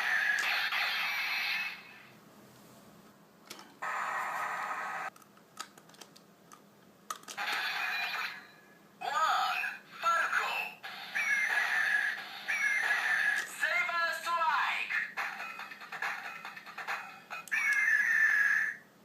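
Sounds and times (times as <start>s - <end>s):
plastic mechanism clicks: 5.1s - 7.4s
toy electronic sound effects: 7.4s - 8.5s, 9.6s - 13.6s, 15.1s - 18.8s.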